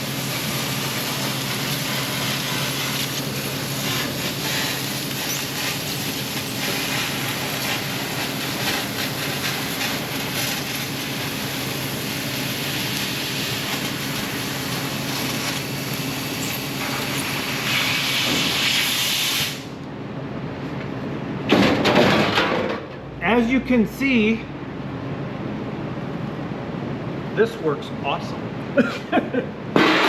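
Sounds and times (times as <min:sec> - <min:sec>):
laser cleaner crackling hiss: 0:00.0 - 0:19.7
low machine hum: 0:19.7 - 0:29.8.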